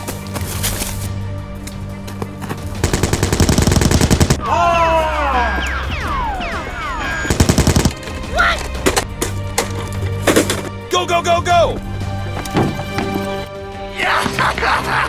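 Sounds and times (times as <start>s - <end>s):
background music: 0.0s - 15.0s
machine-gun fire: 2.8s - 4.5s, 7.3s - 8.2s.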